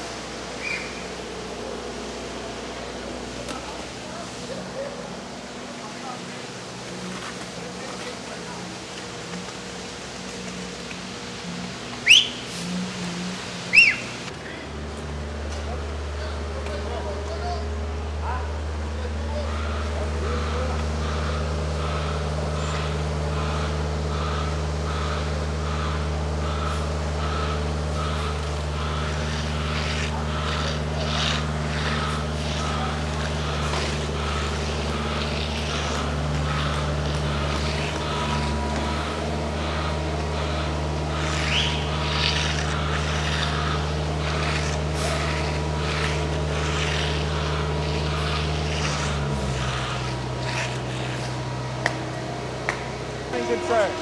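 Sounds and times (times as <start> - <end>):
heavy diesel machinery running: 8.3 - 54.0
scraping: 24.3 - 54.0.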